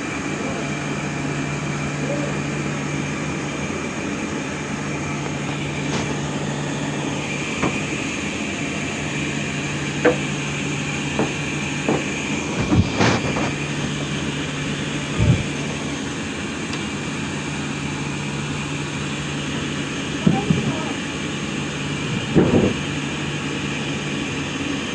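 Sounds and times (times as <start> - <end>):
sawmill machinery humming: 0.0 - 24.9
knocks and clatters: 7.5 - 8.0, 9.9 - 14.2, 20.2 - 20.9, 22.1 - 22.9.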